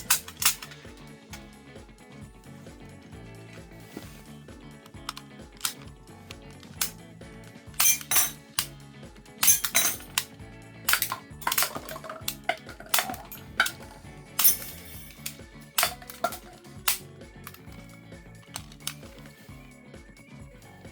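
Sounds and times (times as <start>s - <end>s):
toy pistol clicks and clacks: 0.0s - 1.0s, 4.8s - 7.0s, 7.7s - 8.7s, 9.4s - 10.3s, 10.9s - 19.3s
background music: 0.0s - 20.9s.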